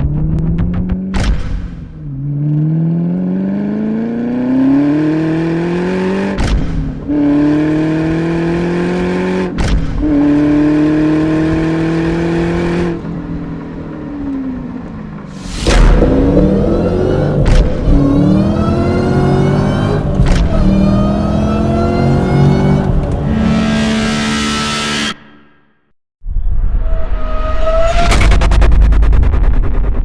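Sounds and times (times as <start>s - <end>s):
car engine accelerating through gears: 2.1s - 25.0s.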